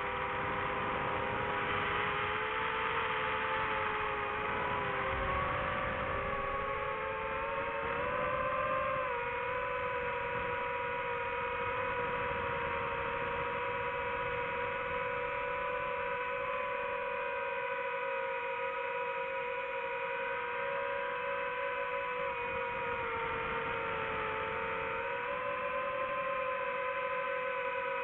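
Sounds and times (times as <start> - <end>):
quadcopter motors whining: 0.0 - 28.0.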